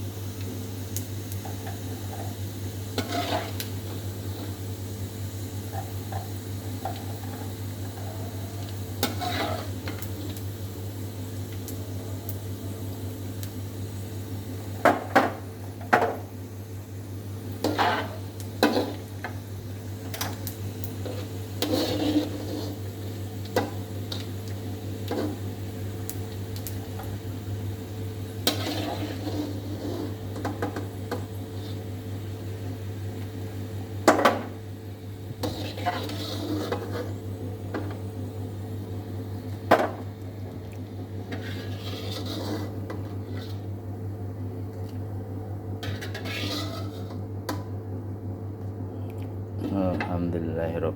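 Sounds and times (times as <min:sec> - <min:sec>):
fish cakes sizzling in a pan: 0:00.0 - 0:30.4
steady low hum: 0:00.0 - 0:50.9.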